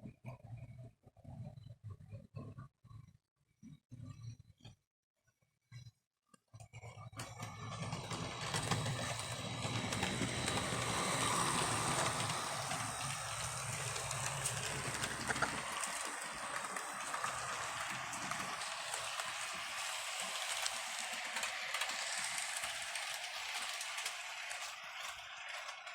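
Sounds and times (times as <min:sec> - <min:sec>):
wheels clicking over rails: 0:07.2 - 0:25.9
model train motor hum: 0:07.4 - 0:25.9.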